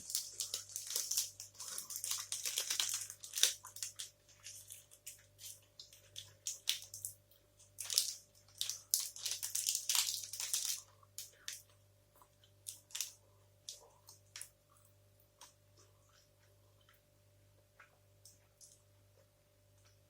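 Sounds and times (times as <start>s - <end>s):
close-miked chewing: 0.0s - 20.0s.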